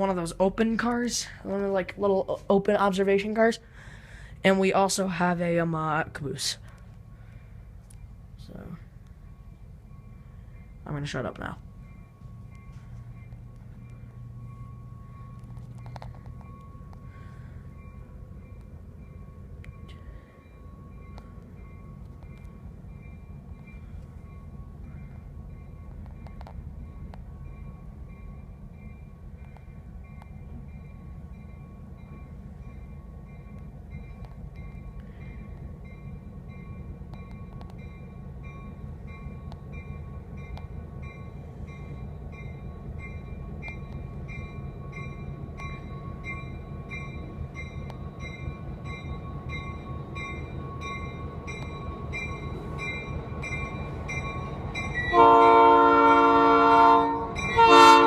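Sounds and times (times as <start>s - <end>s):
locomotive bell ringing: 7.2s - 58.0s
locomotive air horn: 55.1s - 58.0s.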